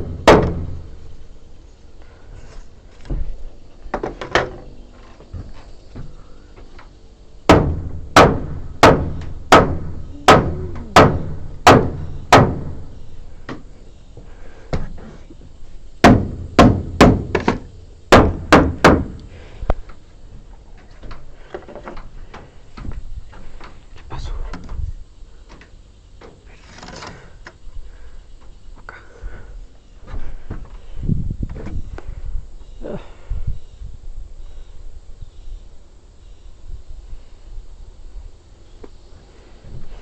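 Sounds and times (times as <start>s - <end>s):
hammer striking wood: 0.0s - 0.8s, 7.5s - 12.8s, 16.0s - 19.2s.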